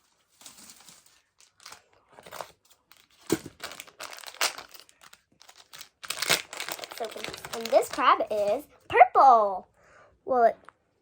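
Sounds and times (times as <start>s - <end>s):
plastic packaging crinkling: 0.0s - 8.8s.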